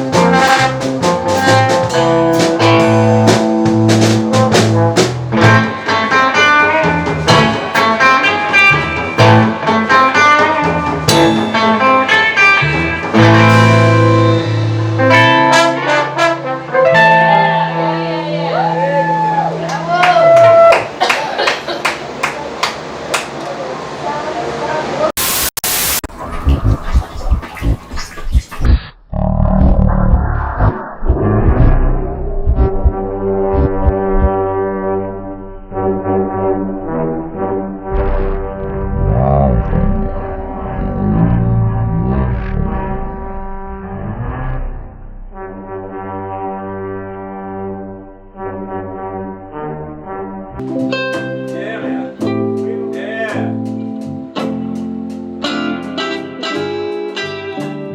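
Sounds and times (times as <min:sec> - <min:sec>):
live band playing: 0:00.0 - 0:17.9, 0:50.6 - 0:57.9
low drum beats: 0:26.1 - 0:34.8, 0:36.9 - 0:43.9
held horn-like note: 0:29.2 - 0:50.5.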